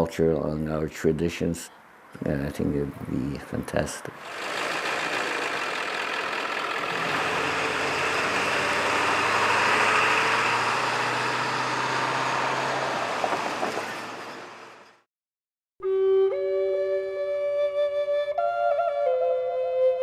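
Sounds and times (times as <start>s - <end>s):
vehicle engine humming: 3.7s - 15.0s.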